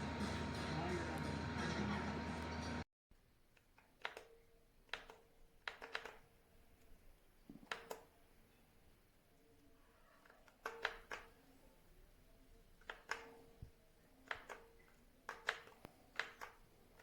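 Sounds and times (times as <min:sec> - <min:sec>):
sharp clicks and taps: 0:03.6 - 0:06.3, 0:14.2 - 0:17.0.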